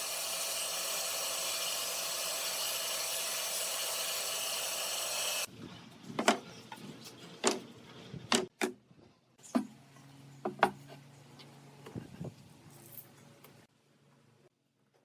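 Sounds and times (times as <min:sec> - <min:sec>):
power tool running: 0:00.0 - 0:05.5.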